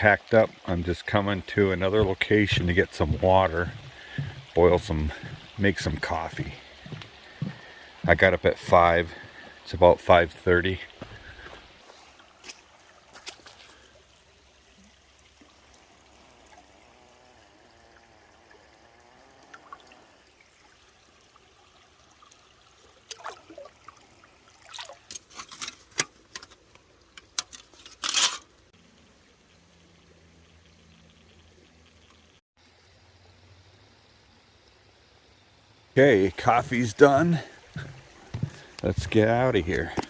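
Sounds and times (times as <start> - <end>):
water trickling and pouring: 0.0 - 35.4, 36.0 - 40.0.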